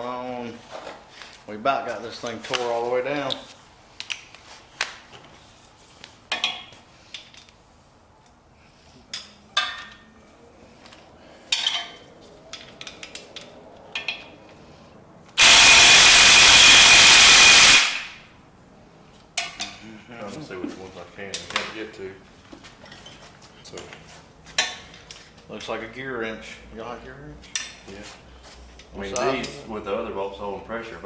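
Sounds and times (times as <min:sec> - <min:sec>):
power tool whining: 0:15.4 - 0:18.2.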